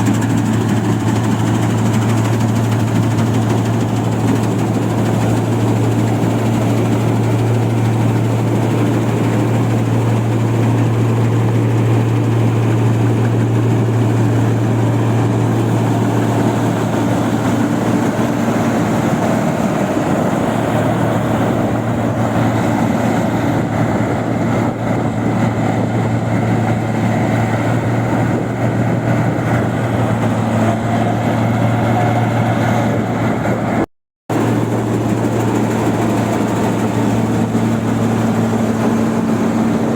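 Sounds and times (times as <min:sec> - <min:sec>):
machine engine low hum: 0:00.0 - 0:39.9.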